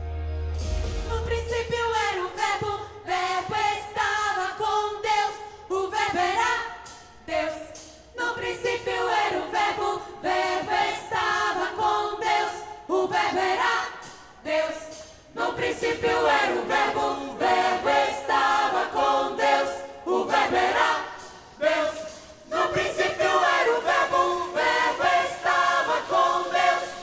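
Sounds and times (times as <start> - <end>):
choir singing: 0.9 - 27.0.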